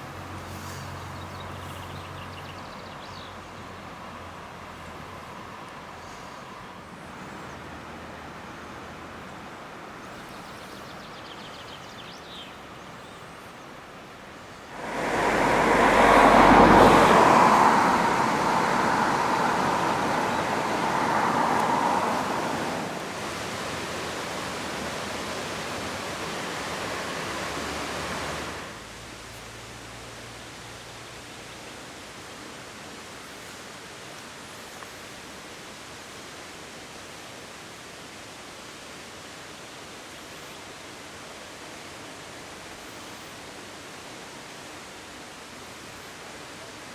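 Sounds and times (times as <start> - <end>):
rushing mountain water: 14.0 - 46.9.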